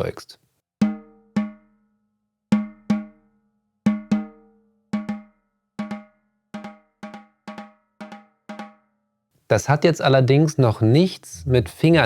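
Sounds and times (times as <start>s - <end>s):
drum double stroke hits: 5.0s - 8.8s.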